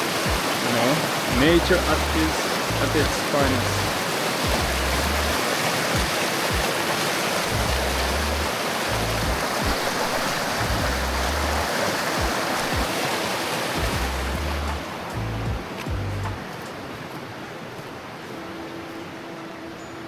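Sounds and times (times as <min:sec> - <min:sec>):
stream rushing over rocks: 0:00.0 - 0:20.0
low rumbles: 0:01.3 - 0:03.9, 0:04.5 - 0:05.4, 0:07.5 - 0:09.9, 0:10.6 - 0:11.7, 0:13.8 - 0:16.4.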